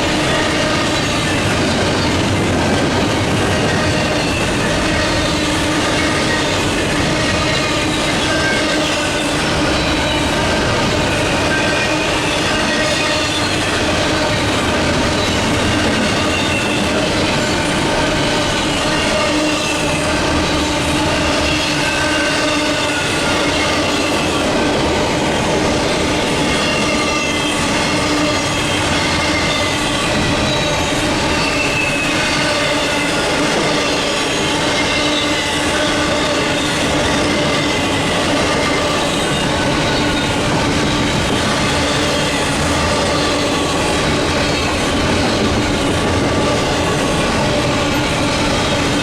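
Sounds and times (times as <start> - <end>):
freight train wheels rumbling: 0.0 - 49.0
wheels squealing: 25.9 - 49.0.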